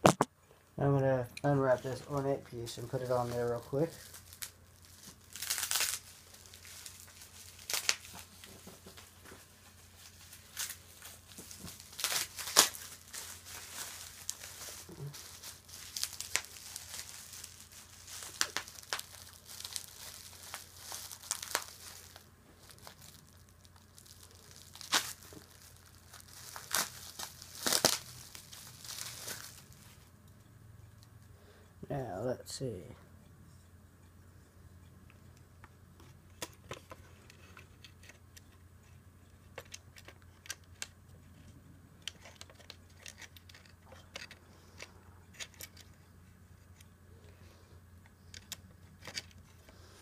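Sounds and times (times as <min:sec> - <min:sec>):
packing wrap crinkling and ripping: 0:01.6 - 0:30.0, 0:42.0 - 0:46.0.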